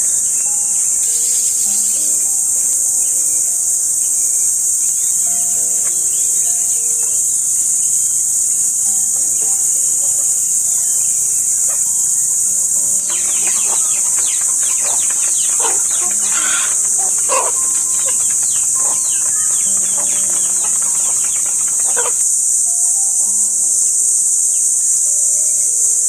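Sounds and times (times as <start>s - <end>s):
high-pitched insect drone: 10.8s - 22.4s
chickens calling: 12.9s - 22.2s.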